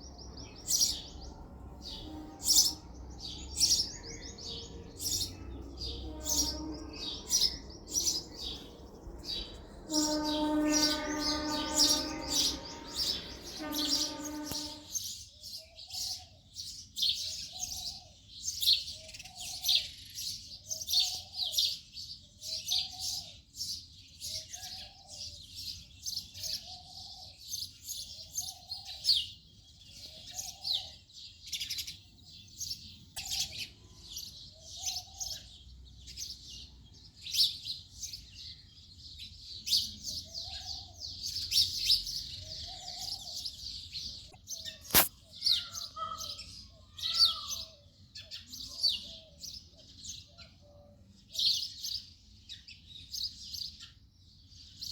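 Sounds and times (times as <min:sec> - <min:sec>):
sparrows chirping: 0:00.0 - 0:54.9
sharp click: 0:44.9 - 0:45.1.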